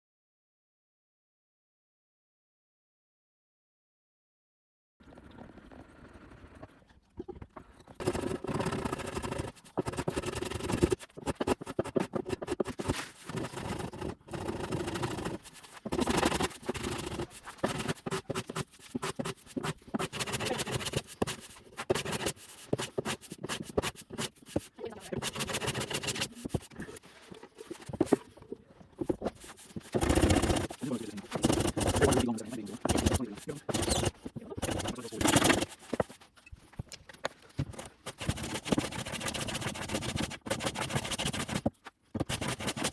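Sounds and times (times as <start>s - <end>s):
hand plane scraping wood: 8.0s - 28.4s, 29.0s - 36.4s, 37.7s - 42.9s.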